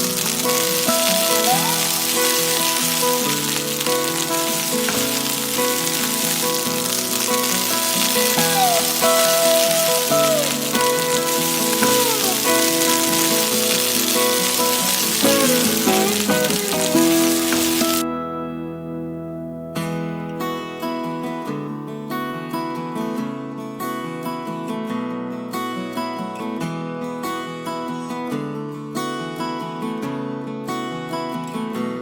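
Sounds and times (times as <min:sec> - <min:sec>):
oil sizzling in a pan: 0:00.0 - 0:18.0
music with sliding notes: 0:00.0 - 0:19.6.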